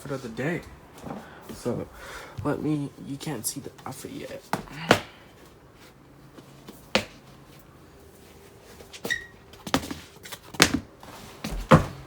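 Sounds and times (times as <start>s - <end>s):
brief high squeak: 9.0s - 9.4s
knocks and bumps: 11.5s - 12.0s.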